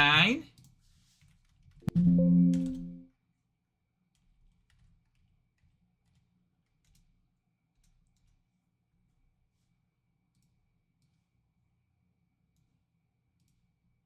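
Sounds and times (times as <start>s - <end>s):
steady low pitched tone: 1.9s - 3.0s.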